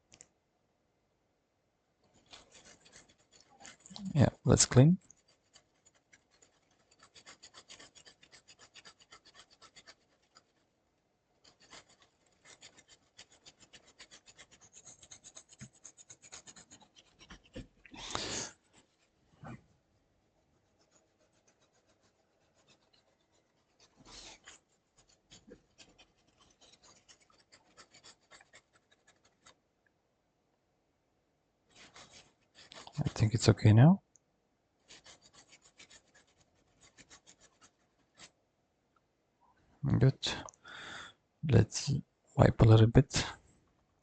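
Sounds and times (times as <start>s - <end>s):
brush scratching strokes: 2.0s - 10.8s, 11.4s - 19.6s, 20.2s - 29.6s, 31.7s - 33.6s, 34.8s - 38.4s
puff of breath: 17.9s - 18.6s, 40.6s - 41.2s.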